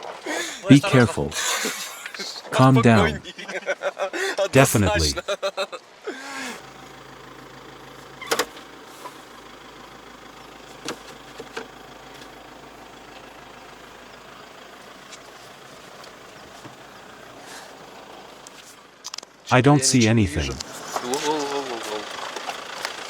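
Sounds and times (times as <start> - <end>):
off-road vehicle running: 6.5 - 23.0.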